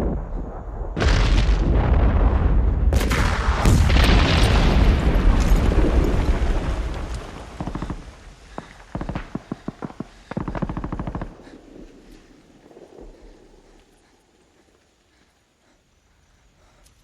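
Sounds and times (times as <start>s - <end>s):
heavy explosions booming: 0.0s - 14.2s
automatic gunfire bursts: 8.6s - 11.9s.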